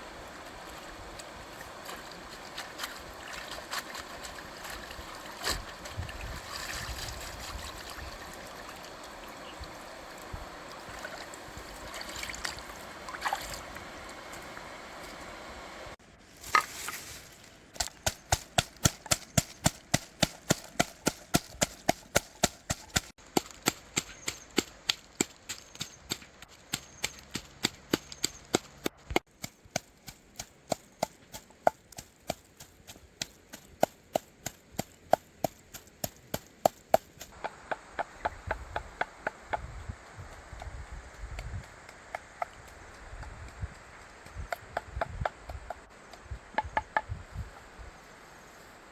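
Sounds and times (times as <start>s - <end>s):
blade chopping on wood: 17.8s - 37.6s.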